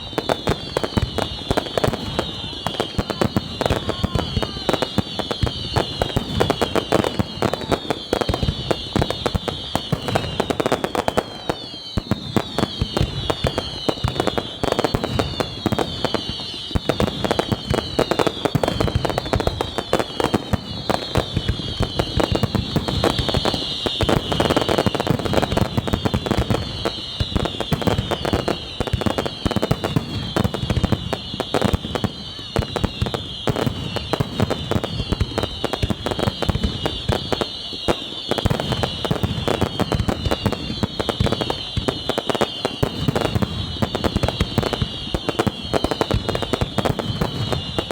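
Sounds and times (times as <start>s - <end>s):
fireworks bangs and crackle: 0.0s - 47.9s
fireworks whistles falling in pitch: 0.0s - 47.9s.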